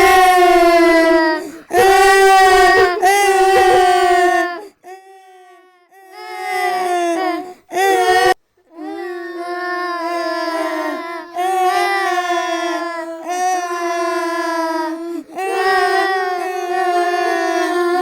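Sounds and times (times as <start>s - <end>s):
girls crying: 0.0s - 4.8s.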